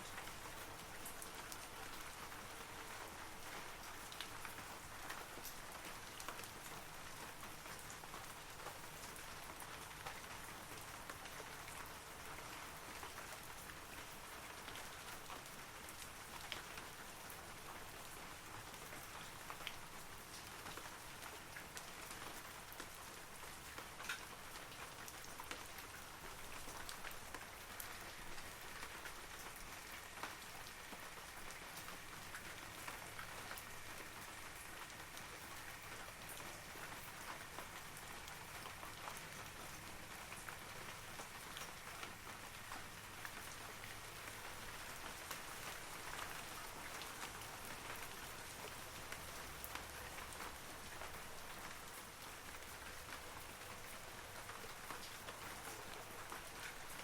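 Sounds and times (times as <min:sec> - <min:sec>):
rain on trees: 0:00.0 - 0:57.0.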